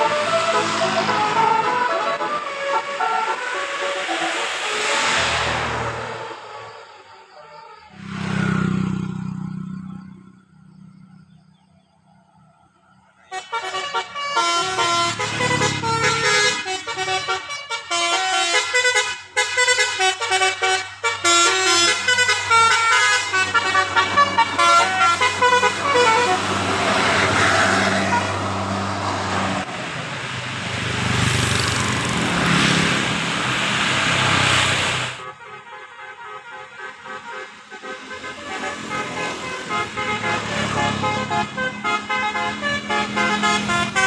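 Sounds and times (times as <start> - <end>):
loud rushing noise: 0.0 - 7.2, 25.2 - 35.3
diesel engine: 0.0 - 44.0
musical air horn tune: 13.3 - 28.5, 34.2 - 44.0.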